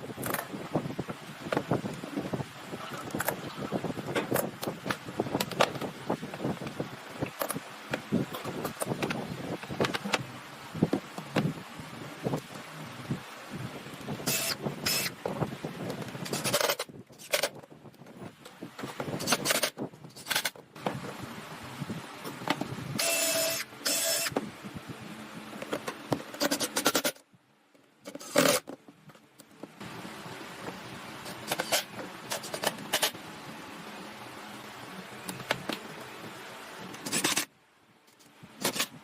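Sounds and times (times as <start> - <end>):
power tool cutting wood: 23.0 - 24.4.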